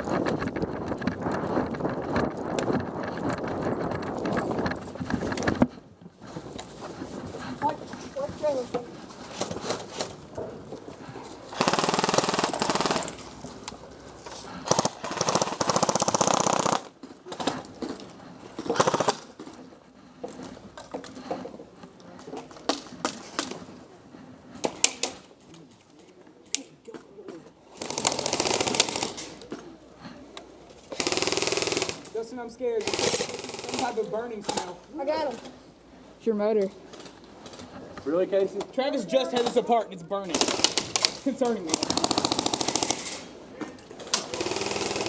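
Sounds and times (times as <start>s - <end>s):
airsoft gun firing full-auto bursts: 11.5s - 13.3s, 14.6s - 16.9s, 18.7s - 19.3s, 27.8s - 29.4s, 30.9s - 32.1s, 32.8s - 34.6s, 40.3s - 43.3s, 44.2s - 45.0s.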